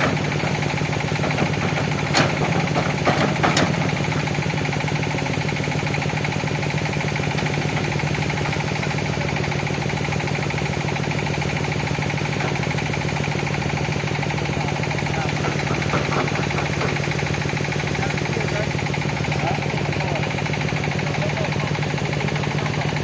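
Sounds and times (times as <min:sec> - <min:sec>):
excavator diesel engine running: 0:00.0 - 0:23.0.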